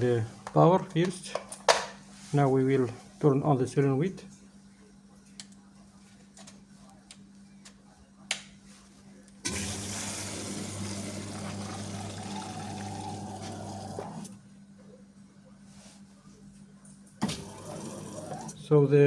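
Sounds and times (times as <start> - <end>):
low mains hum: 0.0 - 19.0
water rushing through valve: 9.5 - 14.3.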